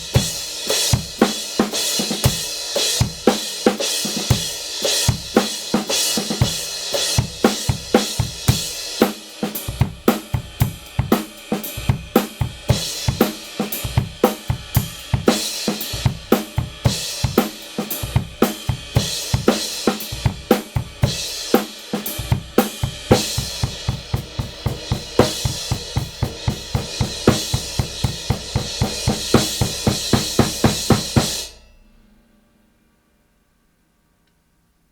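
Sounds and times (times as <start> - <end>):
drum kit groove: 0.0 - 31.7
crash cymbal wash: 12.8 - 32.7.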